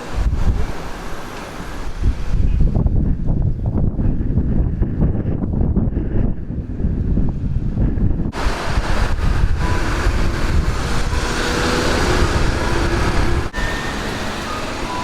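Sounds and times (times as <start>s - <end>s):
wind buffeting microphone: 0.0s - 15.0s
passing road traffic: 7.0s - 15.0s.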